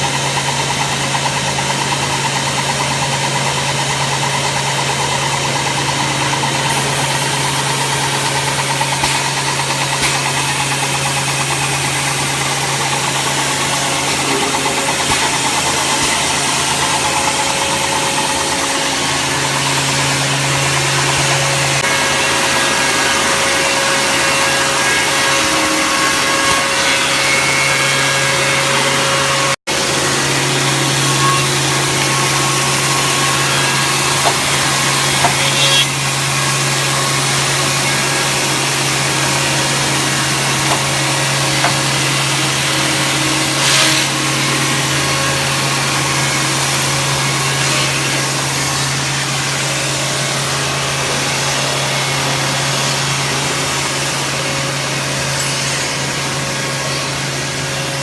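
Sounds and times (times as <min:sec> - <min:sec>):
motor hum: 0:00.0 - 0:49.4
sanding heads rushing on wood: 0:30.2 - 0:49.0.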